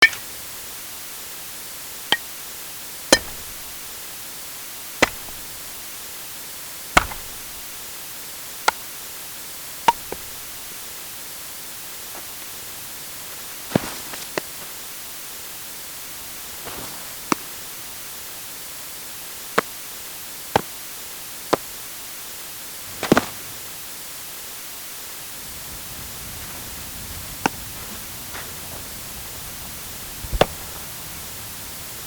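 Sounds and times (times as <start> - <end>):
steady hiss: 0.0 - 32.0
baseball bat hits: 3.1 - 3.9, 5.0 - 5.7, 7.0 - 7.7, 9.9 - 10.6, 20.6 - 20.8, 22.8 - 23.8, 30.3 - 30.8.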